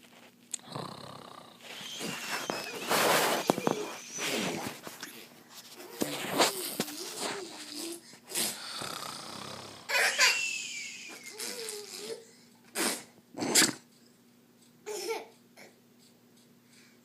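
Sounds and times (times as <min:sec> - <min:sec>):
man fake snoring: 0:00.6 - 0:04.5, 0:07.8 - 0:09.9
child giggling and squealing: 0:01.7 - 0:04.7, 0:09.9 - 0:12.2.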